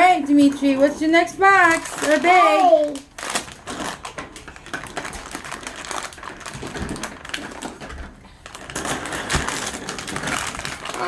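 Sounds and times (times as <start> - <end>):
toy package torn open: 1.7 - 11.0.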